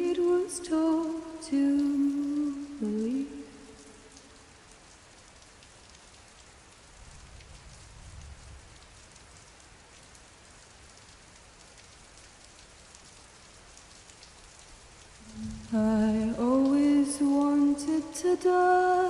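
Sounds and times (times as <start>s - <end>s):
steady rain: 0.0s - 19.0s
low rumble: 15.2s - 16.6s.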